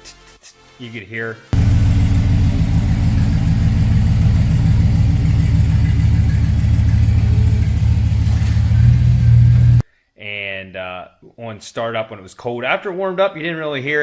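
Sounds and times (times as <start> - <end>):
truck engine idling: 1.6 - 9.8.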